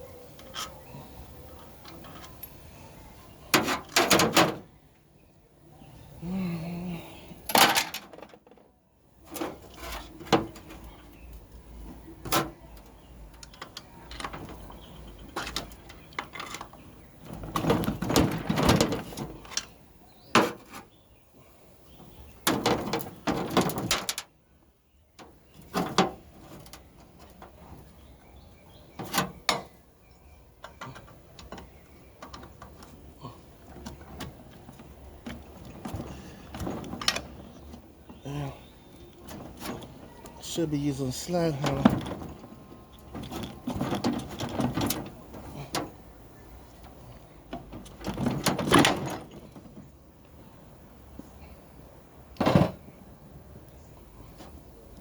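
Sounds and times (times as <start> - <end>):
metal tools clanking and knocking: 1.6 - 2.6, 7.5 - 8.6, 13.4 - 19.7, 30.6 - 33.0, 33.6 - 38.2.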